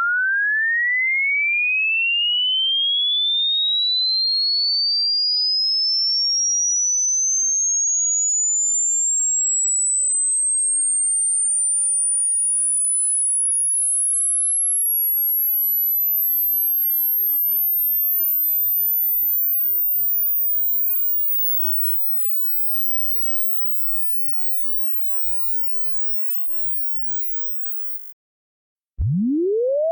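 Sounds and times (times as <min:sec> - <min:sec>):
sine tone sweeping up: 0:05.6 - 0:28.1, 0:29.0 - 0:29.9.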